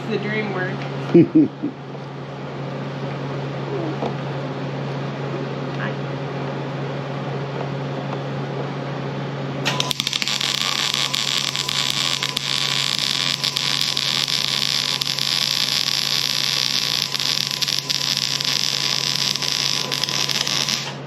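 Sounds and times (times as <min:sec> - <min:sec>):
low steady hum: 0:00.0 - 0:21.0
welder arc crackling sizzle: 0:09.6 - 0:21.0.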